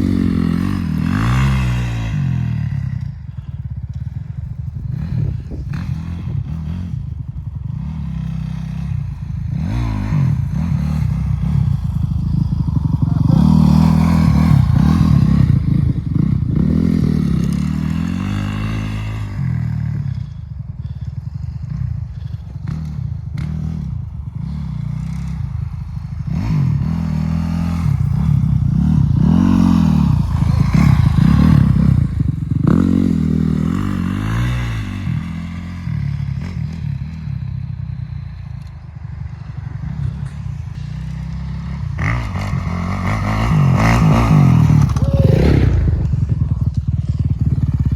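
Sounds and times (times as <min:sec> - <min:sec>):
dirt bike engine revving: 0:00.0 - 0:03.1, 0:04.8 - 0:21.0, 0:26.2 - 0:36.8, 0:40.8 - 0:47.9
clatter: 0:36.0 - 0:47.9.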